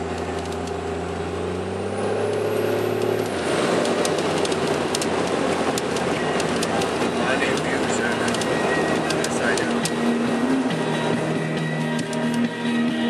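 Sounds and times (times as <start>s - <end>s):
diesel engine drone: 0.0s - 13.0s
rushing road noise: 0.0s - 13.0s
scattered ticks: 3.8s - 10.0s.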